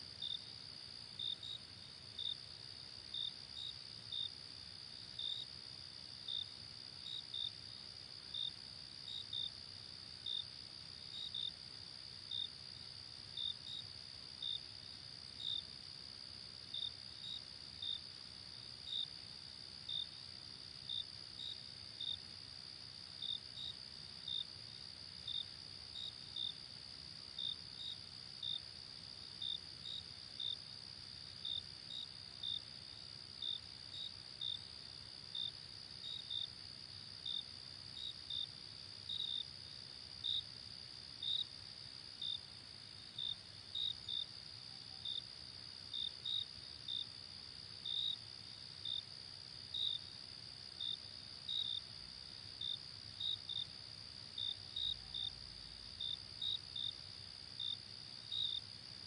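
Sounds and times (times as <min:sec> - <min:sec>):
crickets trilling and chirping: 0:00.0 - 0:59.0.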